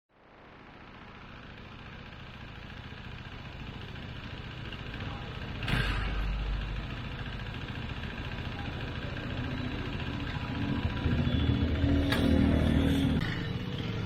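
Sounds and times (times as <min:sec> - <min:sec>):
motorcycle engine idling: 0:00.2 - 0:14.0.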